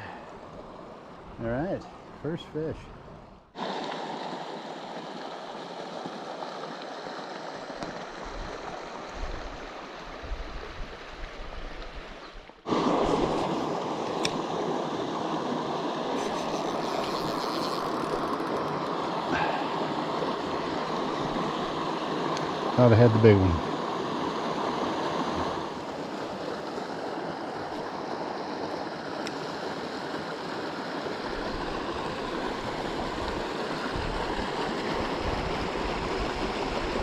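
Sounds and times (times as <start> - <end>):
creek water running over rocks: 0.0 - 37.0.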